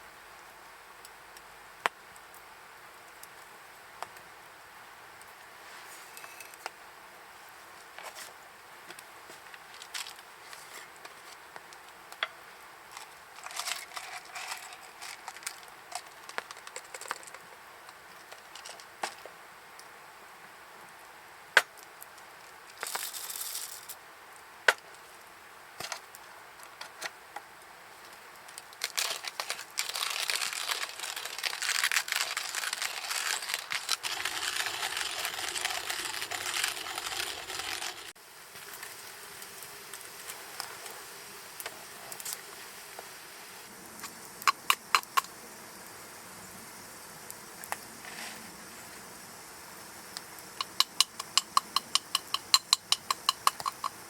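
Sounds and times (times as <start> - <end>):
material crinkling and rustling: 9.3 - 11.4, 13.0 - 17.4, 28.6 - 38.2.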